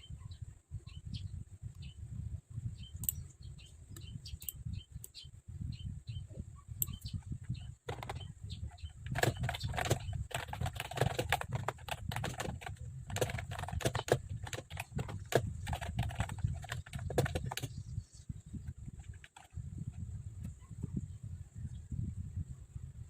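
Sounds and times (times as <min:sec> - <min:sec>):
typing on computer keyboard: 0:07.9 - 0:08.2, 0:09.0 - 0:17.8, 0:19.0 - 0:19.6.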